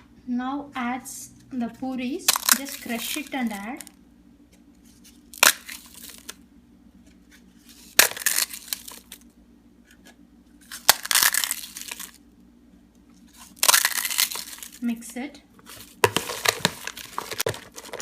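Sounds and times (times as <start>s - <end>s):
crisp fried bread crushed by hand: 5.3s - 6.4s, 7.6s - 9.3s, 10.6s - 12.2s, 13.3s - 14.8s, 15.6s - 18.0s.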